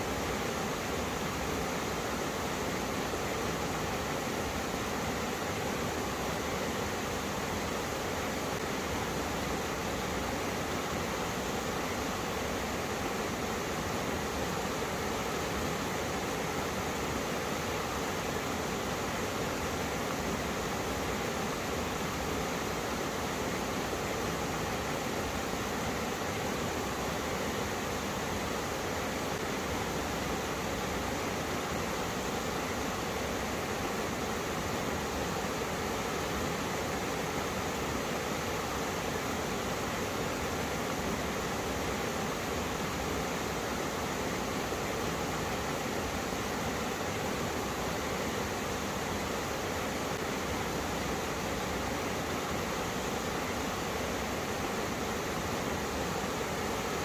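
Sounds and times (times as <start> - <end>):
stream rushing over rocks: 0.0 - 57.0.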